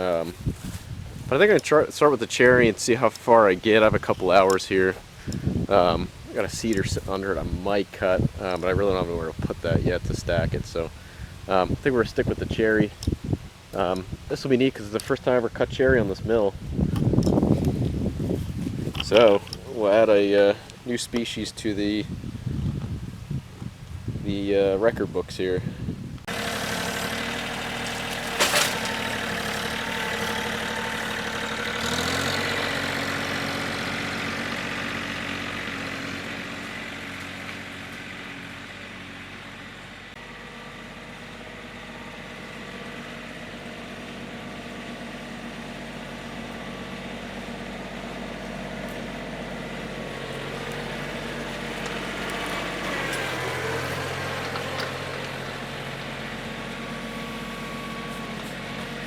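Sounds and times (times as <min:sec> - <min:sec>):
engine idling: 0:00.0 - 0:22.6, 0:26.3 - 0:59.0.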